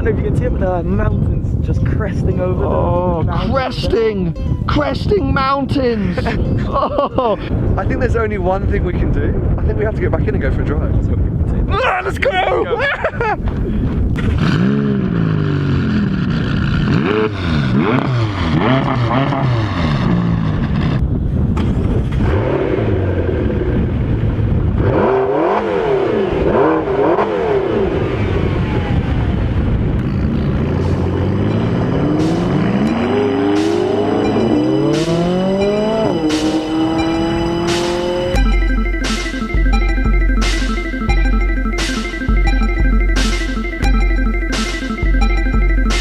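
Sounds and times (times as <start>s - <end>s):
sports car engine revving: 14.2s - 21.0s, 22.1s - 24.1s, 24.7s - 28.9s, 30.0s - 43.9s.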